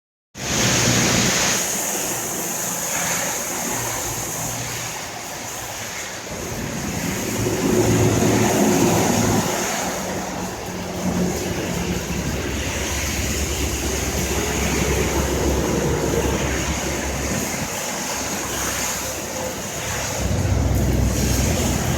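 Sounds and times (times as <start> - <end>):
heavy rain falling: 0.4 - 21.9
low rumble: 20.2 - 21.9.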